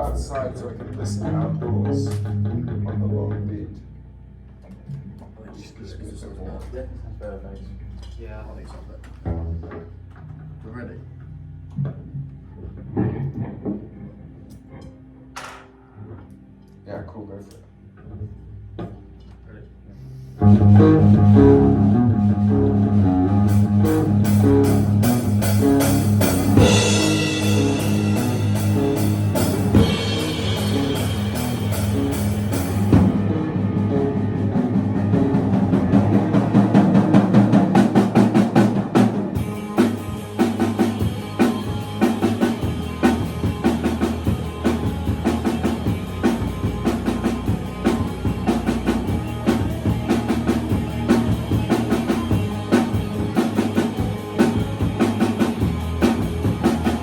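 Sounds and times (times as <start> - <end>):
rock band playing live: 20.4 - 57.0.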